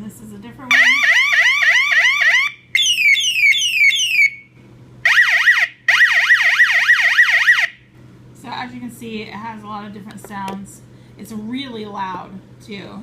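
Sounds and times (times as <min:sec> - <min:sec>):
electronic siren: 0:00.7 - 0:07.8.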